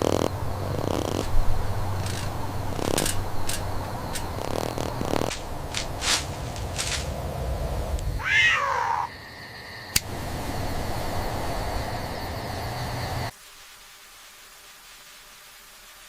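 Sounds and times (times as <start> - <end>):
background hiss and hum: 0.0 - 8.5, 9.9 - 16.0
sharp clicks: 2.0 - 5.9
kitten meowing: 8.2 - 9.1.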